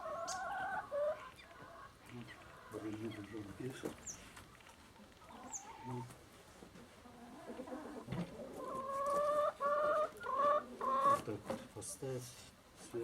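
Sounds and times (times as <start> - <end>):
chicken calling: 0.0 - 6.1, 7.0 - 11.3.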